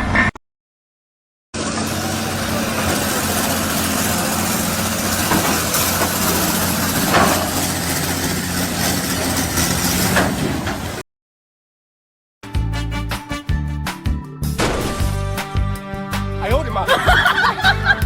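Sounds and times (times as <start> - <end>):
broad noisy rush: 1.6 - 11.0
heavy engine running: 1.6 - 11.0.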